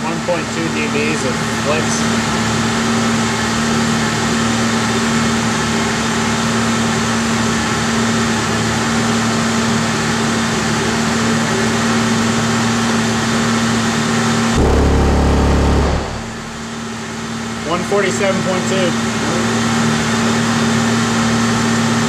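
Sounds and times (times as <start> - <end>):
mechanical hum: 14.6 - 17.3.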